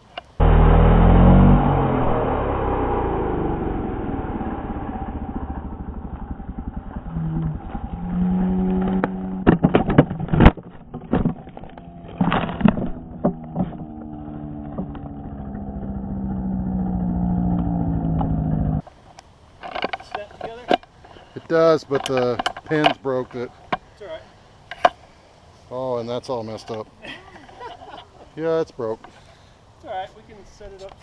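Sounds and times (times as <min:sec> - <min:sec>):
chainsaw engine revving: 0:00.4 - 0:10.3, 0:11.9 - 0:18.8
sharp knocks and clatter: 0:08.6 - 0:15.7.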